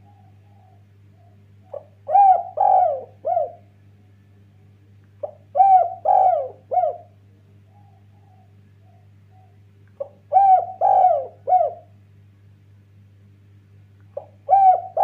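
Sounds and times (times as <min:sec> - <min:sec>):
dove cooing: 0:00.0 - 0:03.7, 0:05.2 - 0:12.0, 0:14.2 - 0:15.0
steady low hum: 0:00.0 - 0:15.0.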